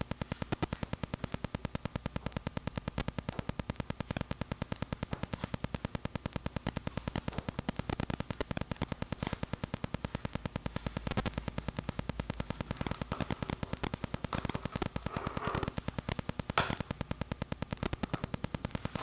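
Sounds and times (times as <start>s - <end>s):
low steady hum: 0.0s - 19.0s
rapid regular clicking: 0.0s - 19.0s.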